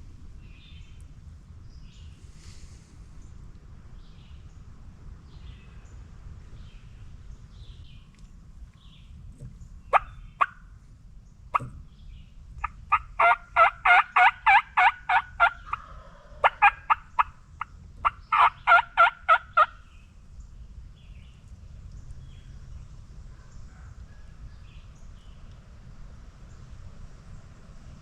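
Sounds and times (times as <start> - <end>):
turkey yelping: 9.9 - 10.6, 11.5 - 11.8, 12.6 - 17.4, 18.0 - 19.8.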